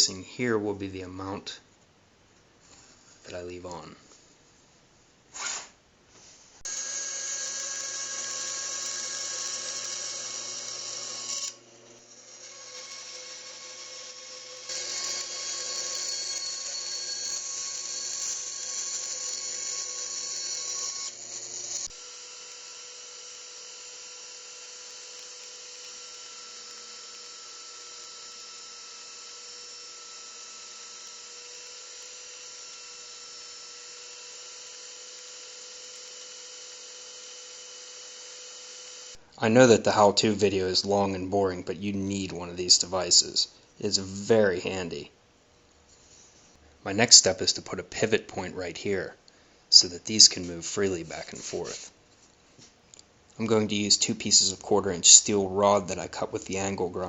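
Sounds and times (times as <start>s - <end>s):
electric power tool whining: 6.6s - 39.2s.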